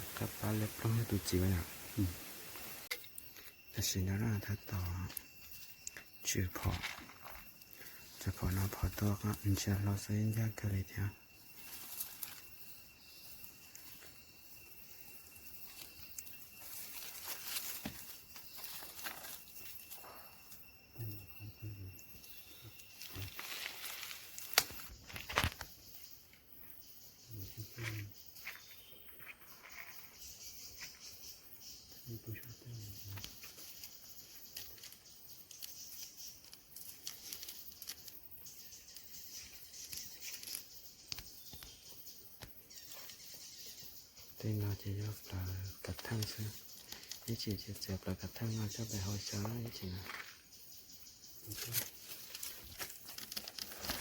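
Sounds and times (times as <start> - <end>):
soft rustles in vegetation: 0.0 - 3.7, 5.2 - 20.8, 22.0 - 26.2, 32.9 - 44.0, 44.9 - 54.0
steady high hiss: 0.0 - 6.6, 7.6 - 26.2
small clicks and rustles: 33.2 - 43.3, 45.9 - 47.3, 51.4 - 54.0.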